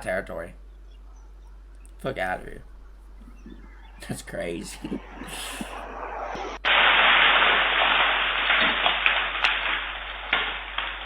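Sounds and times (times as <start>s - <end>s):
loud static hiss: 3.9s - 11.0s.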